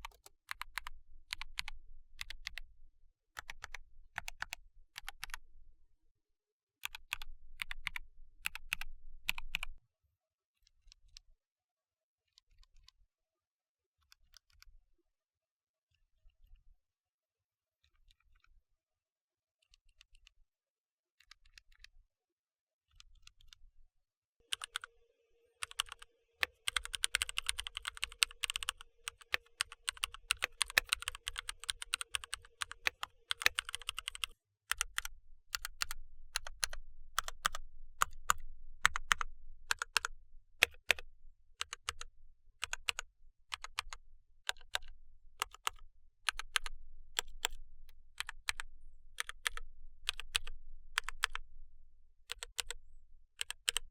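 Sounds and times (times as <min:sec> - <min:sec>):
mechanical keyboard typing: 0:00.0 - 0:02.6, 0:03.4 - 0:05.4, 0:24.5 - 0:24.9, 0:25.6 - 0:41.0, 0:41.6 - 0:48.6, 0:49.2 - 0:51.4, 0:52.3 - 0:52.8, 0:53.4 - 0:53.9.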